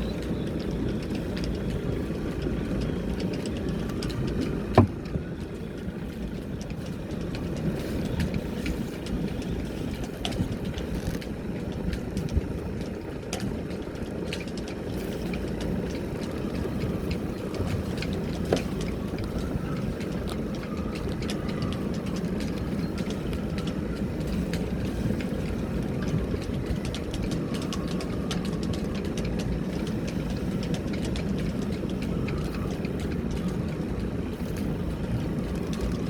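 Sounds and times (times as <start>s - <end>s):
boat engine idling: 0.0s - 36.0s
light ticks and clicks: 0.0s - 36.0s.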